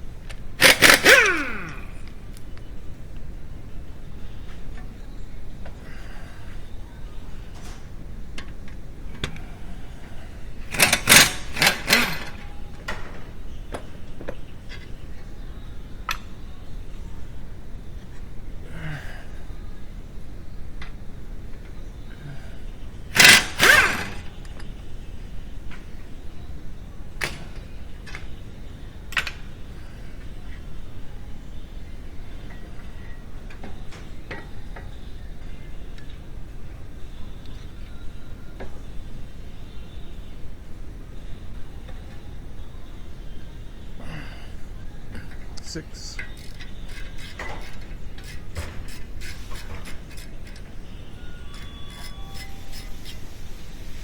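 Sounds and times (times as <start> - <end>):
hand tools clicking on metal: 0.3 - 2.0, 10.7 - 12.5, 23.1 - 24.6, 46.2 - 50.7, 51.4 - 53.6
short ringing tones: 50.9 - 53.4.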